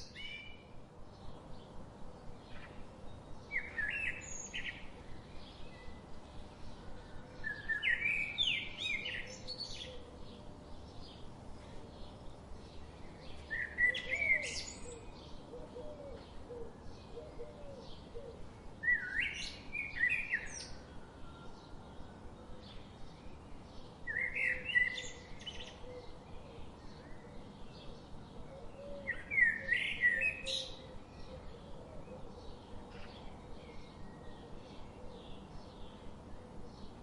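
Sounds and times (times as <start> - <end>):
loud bird song phrase: 0.0 - 37.0.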